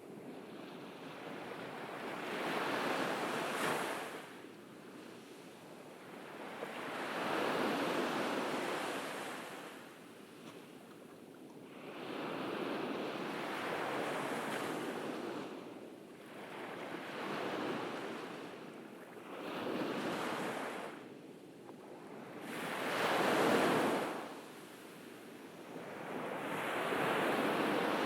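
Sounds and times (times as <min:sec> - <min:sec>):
ocean waves washing onto beach: 0:22.3 - 0:28.0.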